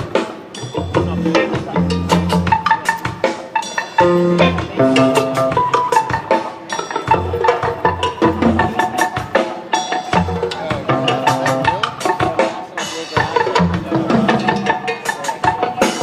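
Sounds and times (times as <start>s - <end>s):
busy drum hits: 0.0s - 16.0s
live rock band jamming: 0.0s - 16.0s
repeating bass figure: 4.0s - 6.0s.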